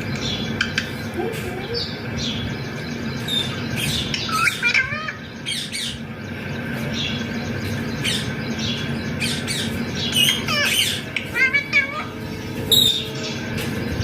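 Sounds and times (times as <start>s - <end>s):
parakeet chirps and squawks: 0.0s - 6.1s, 6.8s - 13.4s
parakeet warbling call: 3.2s - 6.0s, 7.9s - 13.3s.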